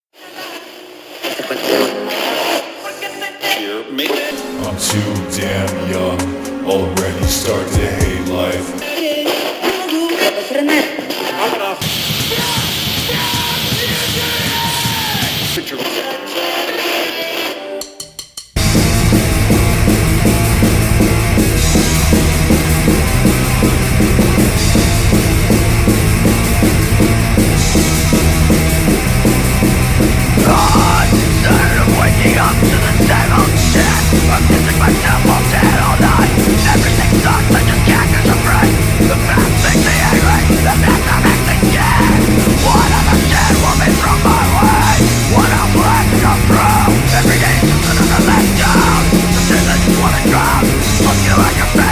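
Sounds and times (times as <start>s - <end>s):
drums: 4.2s - 51.9s
higher shifting melodic line: 4.3s - 8.8s
heavy punk metal band playing: 4.3s - 9.0s, 11.8s - 15.6s, 18.6s - 51.9s
bass guitar: 4.4s - 8.8s, 18.6s - 51.9s
distorted guitar riff: 18.6s - 51.9s.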